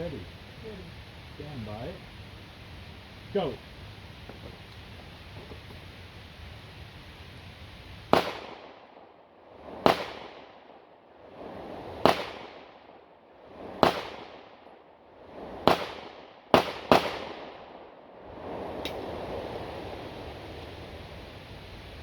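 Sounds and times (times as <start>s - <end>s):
pistol shots: 8.1s - 9.1s, 9.8s - 10.6s, 12.0s - 12.7s, 13.8s - 14.5s, 15.6s - 17.8s.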